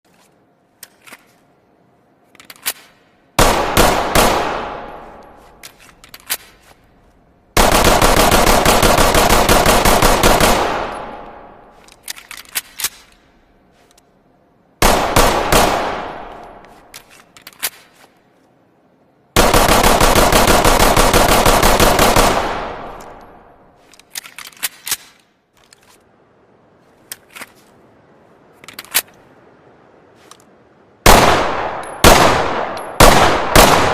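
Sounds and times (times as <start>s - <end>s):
rapid handgun shots with echo: 3.4s - 5.2s, 7.6s - 11.6s, 14.8s - 16.7s, 19.4s - 23.5s, 31.1s - 33.9s.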